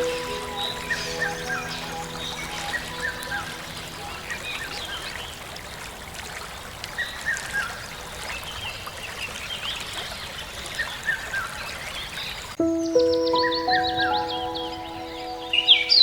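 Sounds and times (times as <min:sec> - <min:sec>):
birds chirping and whistling: 0:00.0 - 0:05.3
outdoor ambience hiss: 0:00.0 - 0:07.0.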